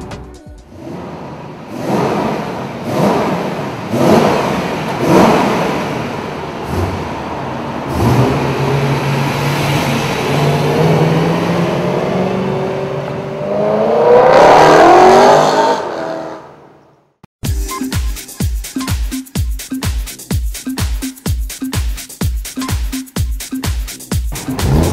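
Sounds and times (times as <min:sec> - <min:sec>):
car engine revving: 0:00.7 - 0:16.8, 0:24.3 - 0:24.9.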